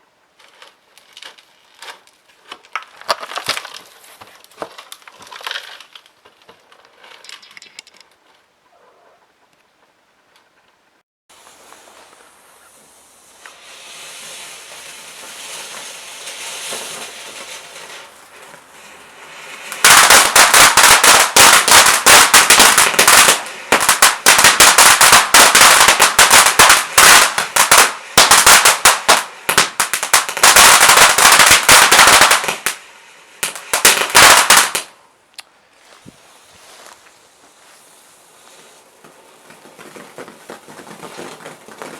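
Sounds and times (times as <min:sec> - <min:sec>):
firework hissing and crackling: 0:11.3 - 0:35.2, 0:35.8 - 0:41.9.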